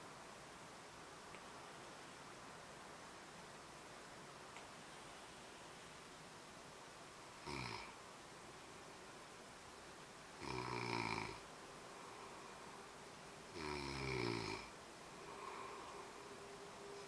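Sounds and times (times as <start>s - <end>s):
man snoring: 7.4s - 8.0s, 10.4s - 11.4s, 13.5s - 14.7s.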